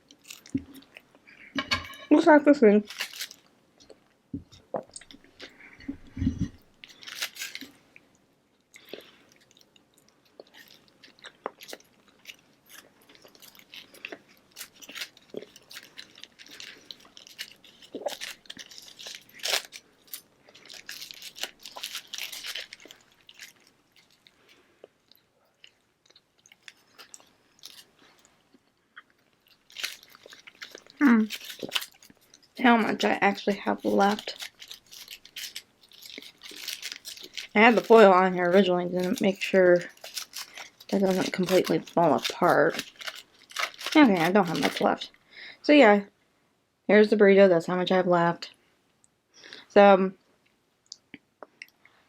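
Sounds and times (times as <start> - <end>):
chewing and biting: 8.7 - 32.6, 33.2 - 44.8.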